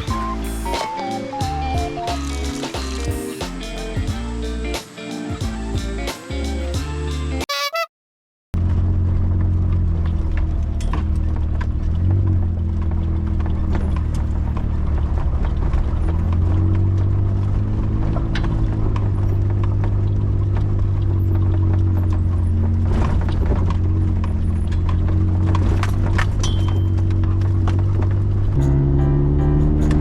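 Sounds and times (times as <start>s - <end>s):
vehicle engine running: 8.6s - 30.0s.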